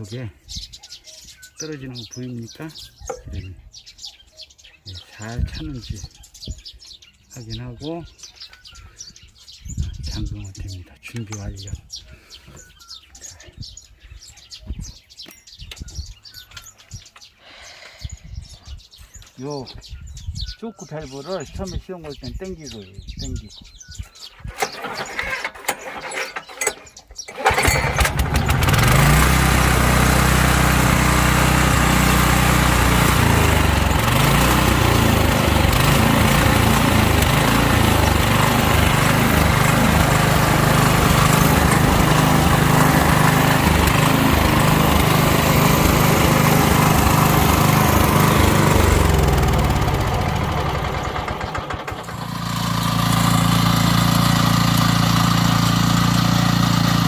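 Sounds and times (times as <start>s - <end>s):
small gasoline engine running: 24.5s - 57.0s.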